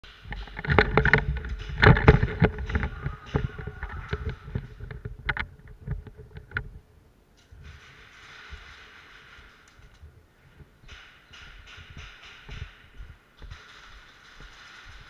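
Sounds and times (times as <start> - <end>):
airsoft guns firing: 7.6 - 10.0, 10.9 - 15.0.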